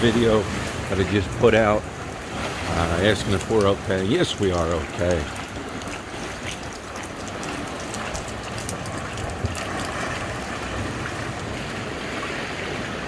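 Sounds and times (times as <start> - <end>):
rain falling steadily: 0.0 - 11.8
raindrops ticking close by: 2.7 - 10.7.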